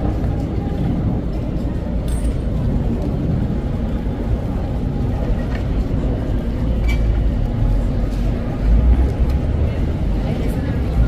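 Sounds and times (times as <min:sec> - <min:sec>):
city traffic rumble: 0:00.0 - 0:11.0.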